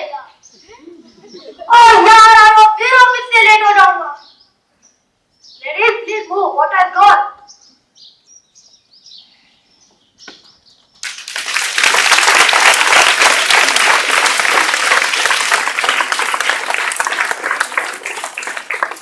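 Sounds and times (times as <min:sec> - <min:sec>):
audience applauding: 0:11.0 - 0:19.0.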